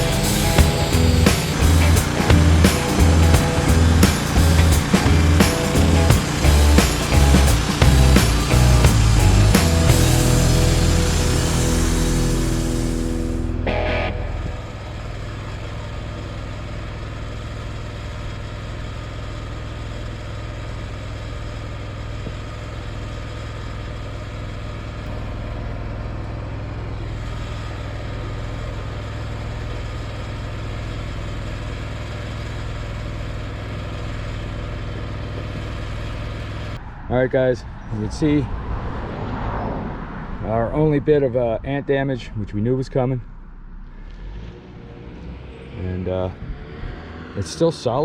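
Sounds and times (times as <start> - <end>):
engine running steadily: 0.0 - 36.8.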